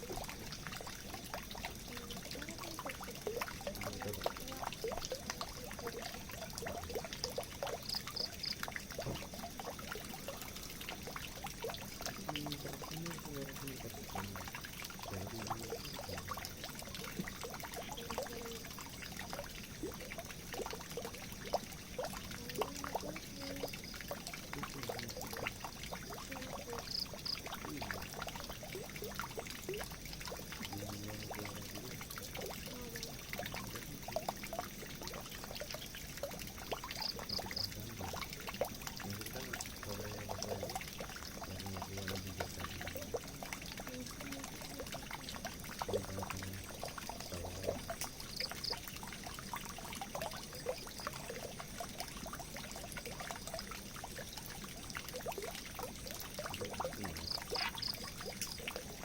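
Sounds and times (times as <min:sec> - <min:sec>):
water pouring into drain: 0:00.0 - 0:59.0.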